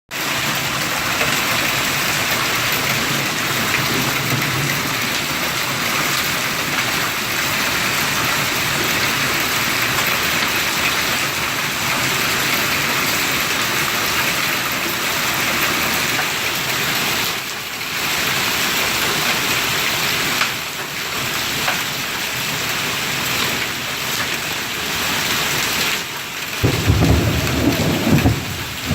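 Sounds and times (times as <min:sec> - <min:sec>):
hail clattering: 0:00.2 - 0:16.8, 0:26.6 - 0:28.9.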